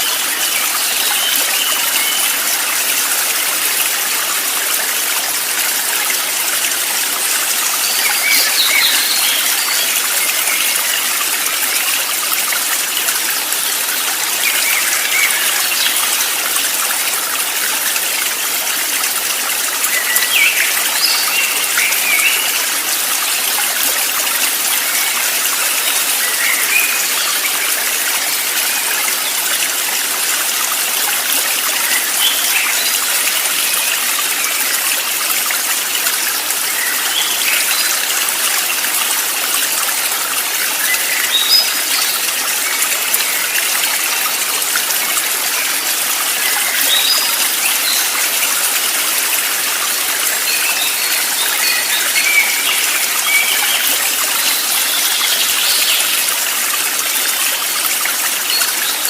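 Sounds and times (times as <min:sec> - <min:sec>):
stream flowing: 0:00.0 - 0:59.0.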